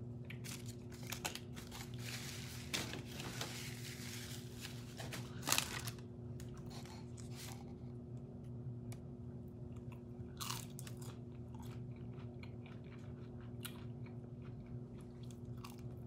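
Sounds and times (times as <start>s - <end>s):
faint steady hum: 0.0s - 16.0s
paper wrapping crinkling: 0.4s - 7.6s.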